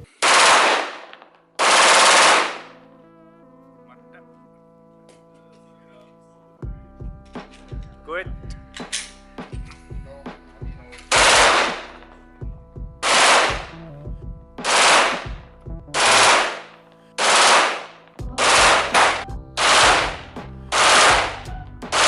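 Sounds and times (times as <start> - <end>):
pistol automatic fire bursts: 0.2 - 2.8, 11.1 - 12.0, 13.0 - 13.7, 14.6 - 15.4, 16.0 - 22.0.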